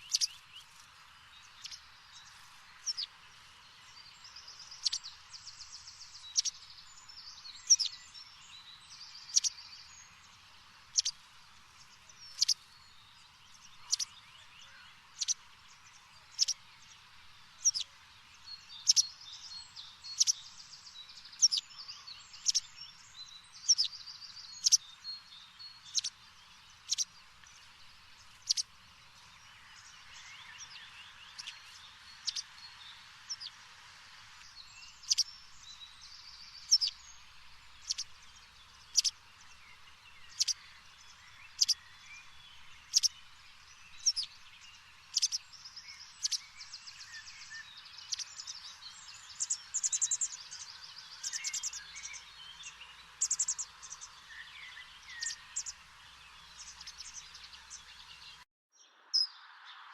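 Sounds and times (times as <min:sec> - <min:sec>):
bird chirping and trilling: 0:00.0 - 0:00.4, 0:09.3 - 0:09.6, 0:12.3 - 0:12.6, 0:21.3 - 0:22.7, 0:23.6 - 0:24.8, 0:28.4 - 0:28.7, 0:34.8 - 0:39.2, 0:40.2 - 0:43.2, 0:43.9 - 0:44.4, 0:45.1 - 0:58.2.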